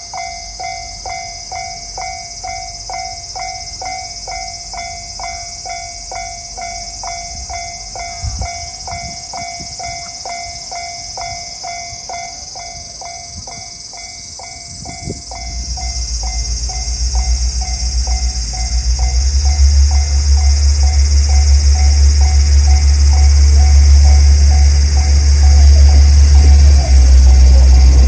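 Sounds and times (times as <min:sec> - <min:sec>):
level crossing warning bell ringing: 0:00.0 - 0:28.0
low rumble: 0:15.0 - 0:28.0.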